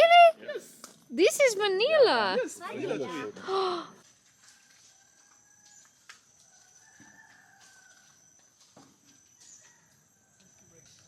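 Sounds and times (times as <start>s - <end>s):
faint rooster crowing: 4.4s - 11.0s.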